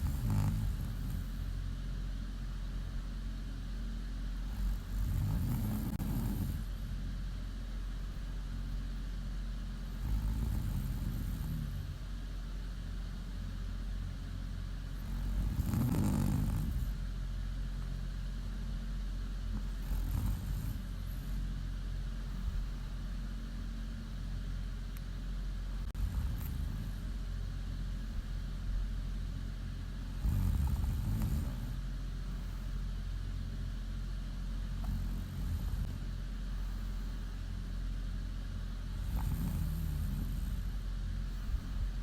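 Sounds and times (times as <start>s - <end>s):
woman snoring: 0.0s - 1.5s, 4.4s - 6.8s, 9.9s - 12.1s, 14.9s - 17.0s, 19.5s - 21.4s, 25.8s - 27.2s, 30.0s - 31.8s, 34.8s - 36.0s, 38.9s - 40.8s
steady low hum: 0.0s - 42.0s.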